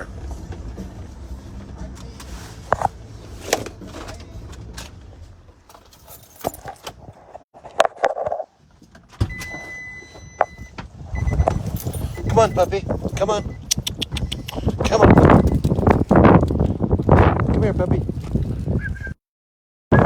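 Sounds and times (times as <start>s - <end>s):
car engine rumble: 0.0s - 7.5s, 8.5s - 18.9s
car door: 8.8s - 13.6s
keys clicking: 11.5s - 16.8s.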